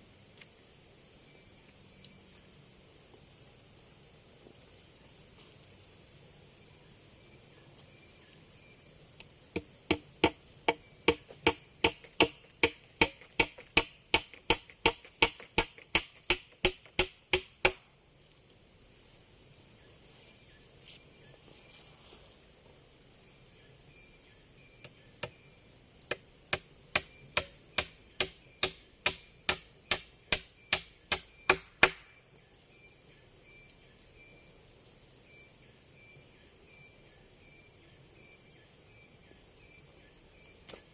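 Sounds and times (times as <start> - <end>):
forest insects droning: 0.0 - 40.9
chopping strikes on wood: 9.5 - 17.8, 26.1 - 32.1.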